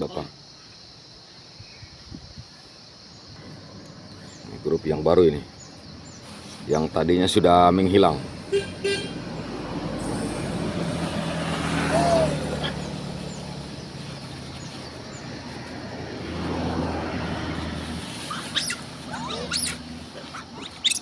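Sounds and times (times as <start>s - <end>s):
vehicle engine humming: 3.4s - 21.0s
monkey squeaks: 18.3s - 19.8s, 20.6s - 21.0s.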